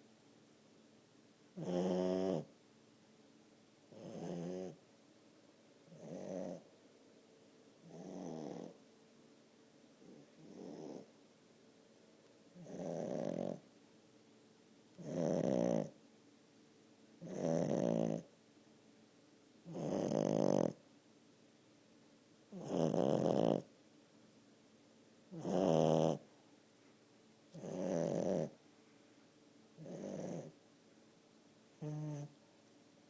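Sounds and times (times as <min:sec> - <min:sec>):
dog snoring: 0:01.6 - 0:02.5, 0:03.9 - 0:04.8, 0:05.9 - 0:06.7, 0:07.8 - 0:08.8, 0:10.0 - 0:11.1, 0:12.5 - 0:13.6, 0:15.0 - 0:16.0, 0:17.2 - 0:18.3, 0:19.6 - 0:20.8, 0:22.5 - 0:23.7, 0:25.3 - 0:26.3, 0:27.5 - 0:28.6, 0:29.8 - 0:30.6, 0:31.8 - 0:32.4.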